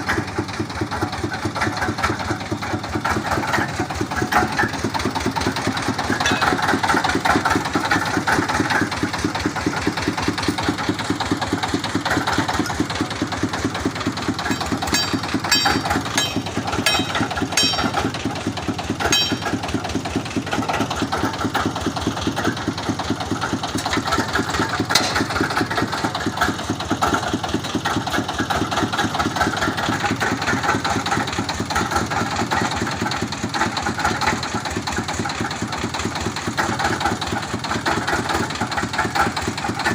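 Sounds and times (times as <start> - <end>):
drilling rig engine running: 0.0 - 39.9
light metallic clinks: 14.5 - 17.9.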